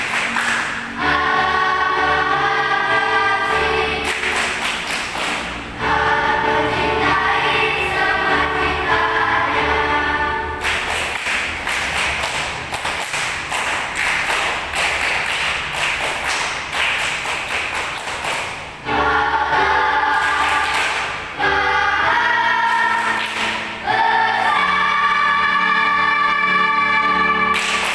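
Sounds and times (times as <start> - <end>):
choir singing in harmony: 0.0 - 10.8, 18.8 - 27.9.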